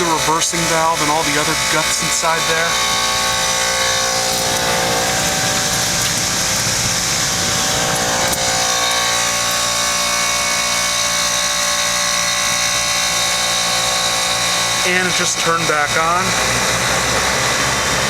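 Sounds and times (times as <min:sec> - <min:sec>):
compressor humming: 0:00.0 - 0:18.0
airy rush: 0:01.0 - 0:11.4.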